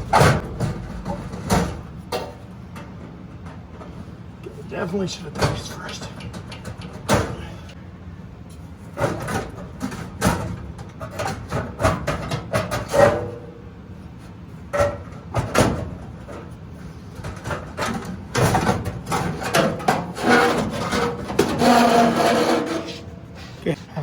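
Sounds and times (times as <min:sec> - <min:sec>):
metallic knocks and scrapes: 0:17.3 - 0:23.4.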